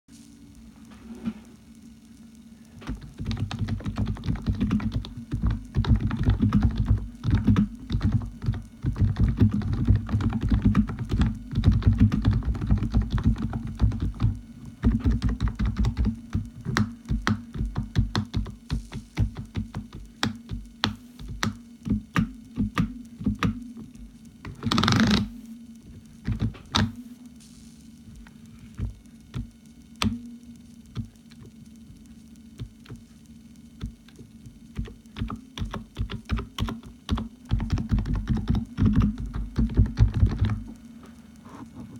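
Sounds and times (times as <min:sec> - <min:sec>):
low hum: 0:00.1 - 0:41.9
keyboard typing: 0:02.8 - 0:25.4, 0:26.2 - 0:27.0, 0:33.8 - 0:40.7.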